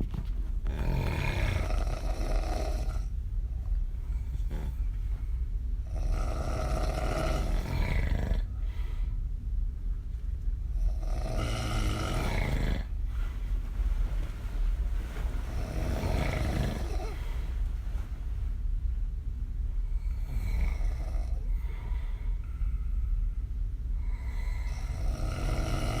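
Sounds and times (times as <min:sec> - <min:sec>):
woman snoring: 0:00.7 - 0:03.1, 0:04.1 - 0:04.9, 0:05.9 - 0:08.5, 0:10.9 - 0:12.9, 0:15.4 - 0:17.6, 0:20.0 - 0:22.0, 0:24.0 - 0:26.0.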